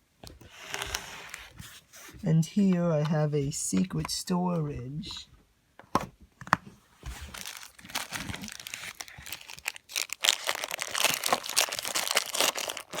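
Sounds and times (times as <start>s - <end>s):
crinkly packaging crumpled: 7.1s - 13.0s.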